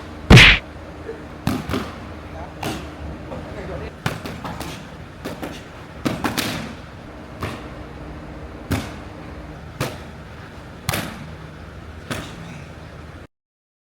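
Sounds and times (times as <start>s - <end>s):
punches hitting boxing pads: 0.3s - 0.6s.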